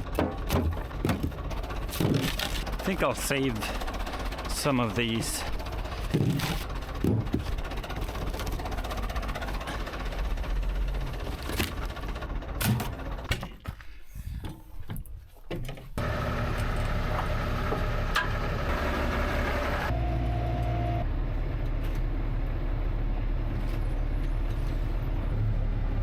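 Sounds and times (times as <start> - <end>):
knocks and clatter: 0.0 - 2.8, 5.9 - 10.0
tractor engine running: 0.0 - 13.8, 16.0 - 26.0.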